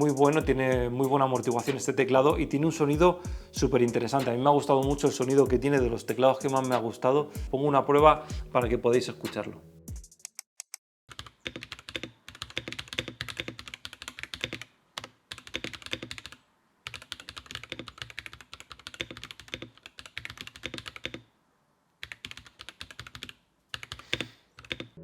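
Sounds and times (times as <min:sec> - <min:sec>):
mechanical keyboard typing: 0:10.1 - 0:21.3, 0:22.0 - 0:25.0.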